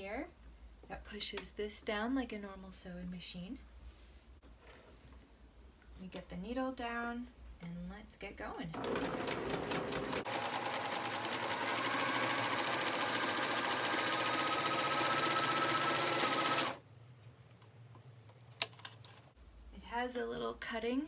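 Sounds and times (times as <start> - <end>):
sewing machine stitching: 8.7 - 16.8.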